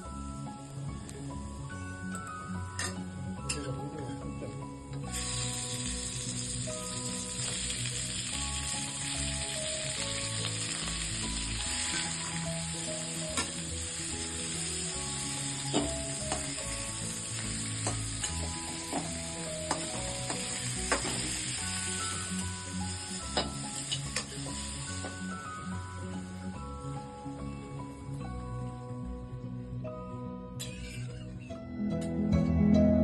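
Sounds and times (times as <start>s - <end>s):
food sizzling in a pan: 5.0s - 28.3s.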